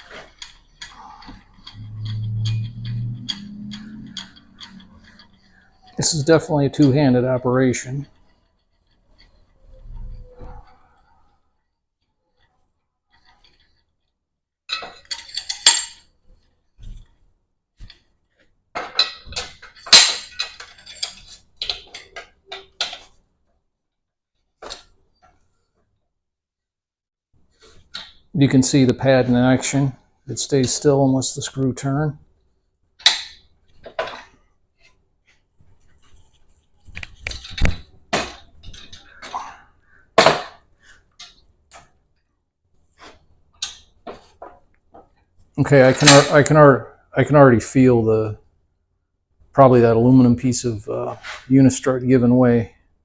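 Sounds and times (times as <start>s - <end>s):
metal clinks and knocks: 0.0s - 7.3s, 14.7s - 17.2s, 17.8s - 23.2s, 33.0s - 39.3s
metal parts clanking: 0.0s - 7.9s, 14.7s - 16.1s, 18.8s - 23.2s, 37.0s - 39.5s, 45.9s - 46.5s.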